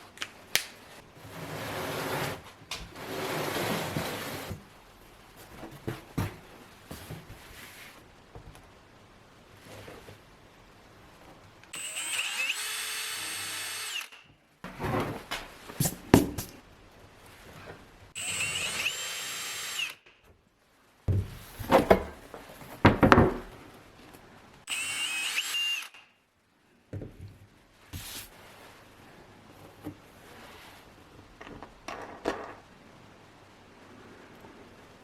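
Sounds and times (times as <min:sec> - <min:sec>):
knocks and scrapes: 0:01.2 - 0:04.6, 0:14.6 - 0:16.6, 0:21.1 - 0:23.6
power drill whining: 0:11.7 - 0:14.2, 0:18.2 - 0:20.0, 0:24.7 - 0:26.1.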